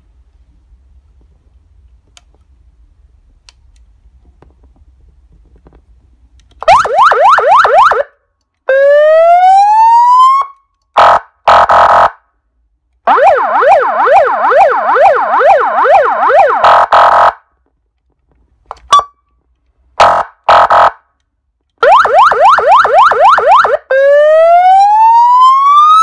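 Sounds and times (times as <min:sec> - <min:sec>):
faint hum with small clicks: 0:00.0 - 0:06.8, 0:12.7 - 0:13.1
electronic vehicle siren: 0:06.6 - 0:08.1, 0:08.7 - 0:12.1, 0:13.1 - 0:17.4, 0:21.8 - 0:26.0.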